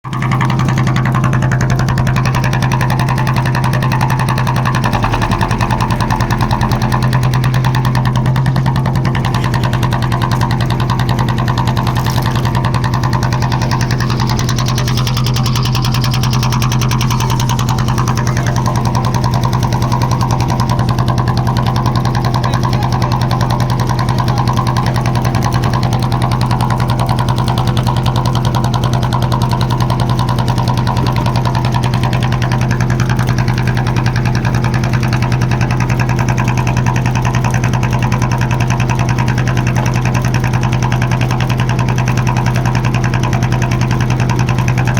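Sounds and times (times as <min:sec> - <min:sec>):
boat engine running: 0:00.0 - 0:44.9.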